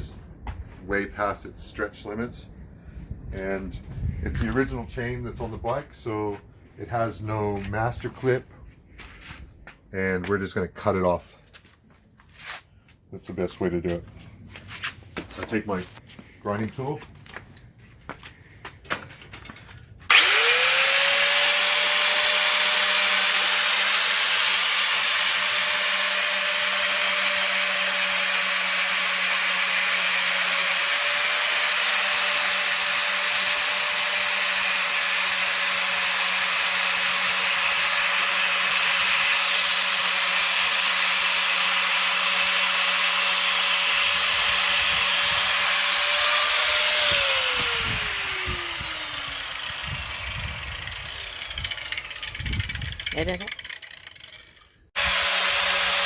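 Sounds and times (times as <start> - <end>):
electric grinder whining: 20.1 - 56.0
grinding on metal chain: 29.9 - 56.0.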